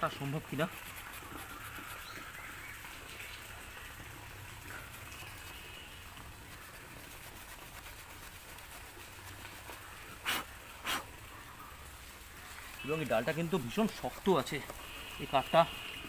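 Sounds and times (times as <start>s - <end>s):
small saw rasping through wood: 0.0s - 2.8s, 13.3s - 15.2s.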